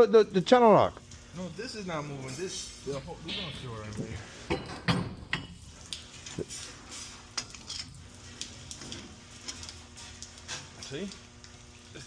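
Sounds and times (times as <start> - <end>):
sharp metal knocks: 3.3 - 3.6
metal fittings and tools clanking: 6.2 - 8.0, 8.7 - 11.2.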